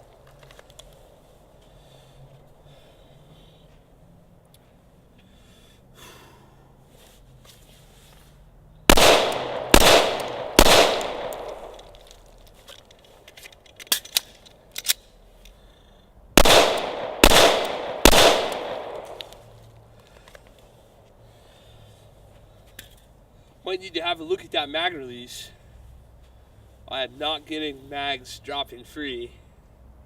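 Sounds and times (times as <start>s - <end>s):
pistol shots: 8.9s - 12.0s, 16.4s - 19.4s
light clicks: 11.0s - 15.6s.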